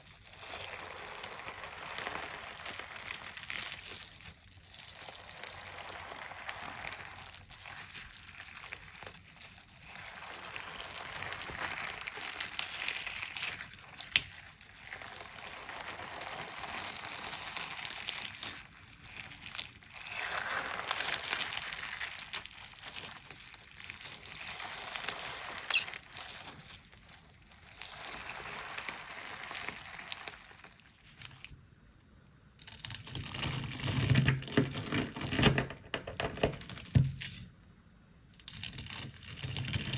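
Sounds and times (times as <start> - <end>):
crunchy slime being squeezed: 0.0 - 31.5.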